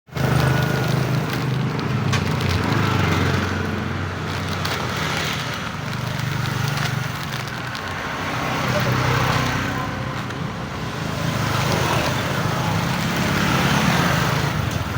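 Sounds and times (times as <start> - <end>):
clicks and clatter: 0.1 - 10.4.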